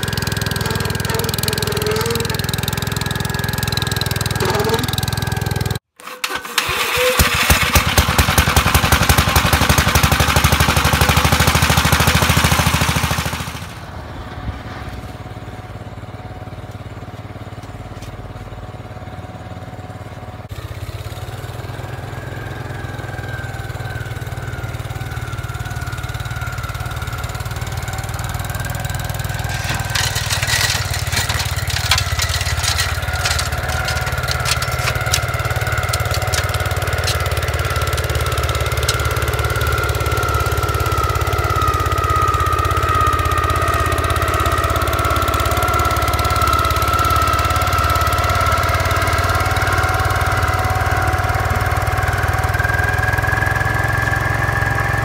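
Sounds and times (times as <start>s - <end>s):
snow blower high whine: 0.0s - 14.0s, 19.8s - 55.0s
tractor engine running: 0.0s - 55.0s
sharp clicks and ticks: 29.4s - 38.2s.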